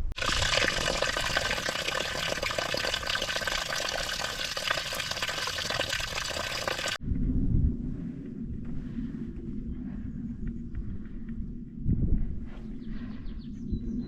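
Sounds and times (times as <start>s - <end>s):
water rushing over rocks: 0.1s - 7.0s.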